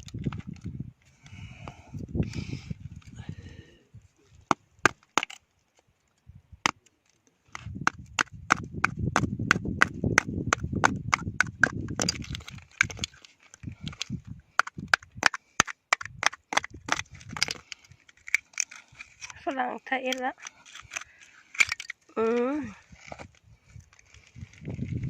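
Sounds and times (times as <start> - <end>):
tool knocking shells on rock: 7.5 - 13.2, 13.8 - 17.7.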